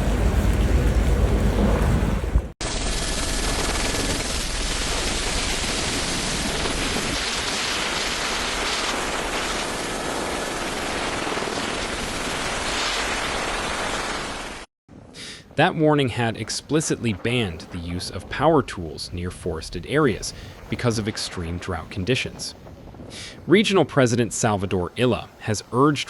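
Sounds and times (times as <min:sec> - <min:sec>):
fire crackling and popping: 0:02.6 - 0:14.7, 0:20.1 - 0:23.3.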